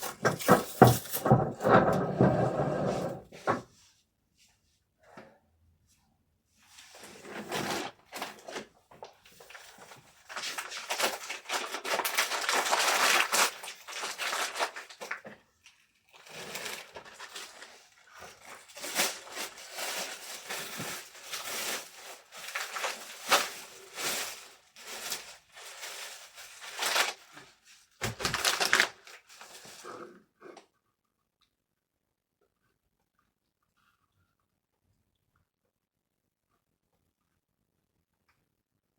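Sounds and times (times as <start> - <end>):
packaging crinkling and rustling: 0.0 - 2.3, 7.0 - 30.0.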